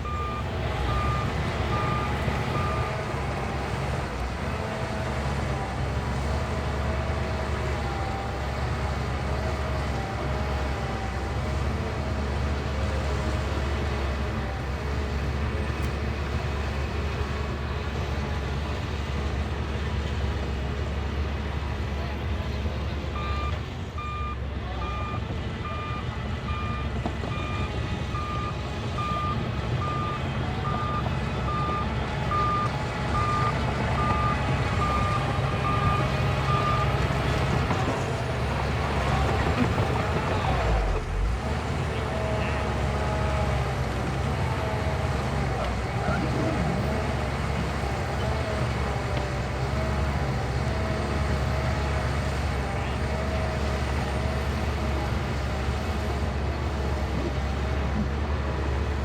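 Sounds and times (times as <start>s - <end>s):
reversing alarm beeping: 0.0s - 3.4s, 23.2s - 37.8s
bulldozer diesel engine running: 0.0s - 59.0s.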